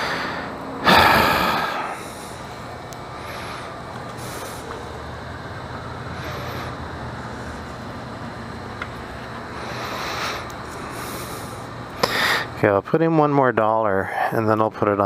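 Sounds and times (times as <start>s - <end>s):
heavy breathing close to microphone: 0.0s - 4.9s, 6.0s - 7.6s, 9.5s - 12.6s.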